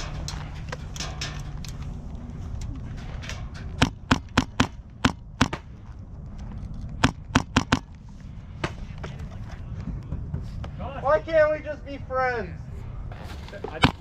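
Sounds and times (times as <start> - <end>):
airsoft gun shots: 3.8 - 5.7.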